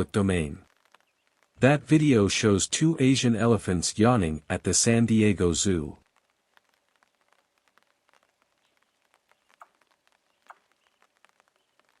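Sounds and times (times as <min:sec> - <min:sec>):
faint ticks: 0:06.0 - 0:12.0.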